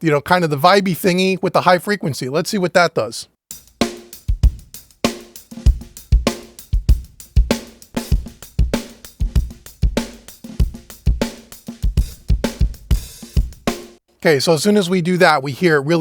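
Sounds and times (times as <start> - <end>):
saturated drum kit groove: 3.4 - 14.1.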